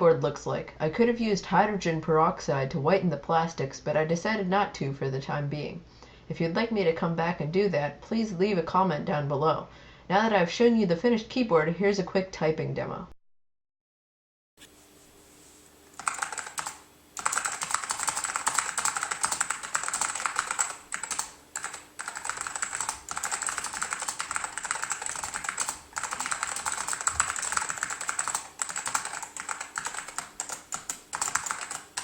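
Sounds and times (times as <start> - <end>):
fast typing on mechanical keyboard: 16.0 - 32.0.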